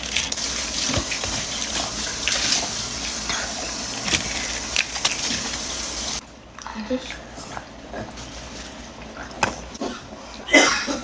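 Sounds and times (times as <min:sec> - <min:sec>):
wet chewing: 0:00.0 - 0:05.7.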